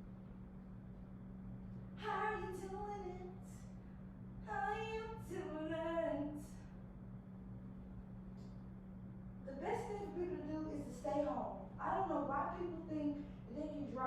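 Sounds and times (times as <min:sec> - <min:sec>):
low hum: 0:00.0 - 0:14.0
woman singing: 0:02.0 - 0:03.6, 0:04.5 - 0:06.6, 0:09.5 - 0:14.0.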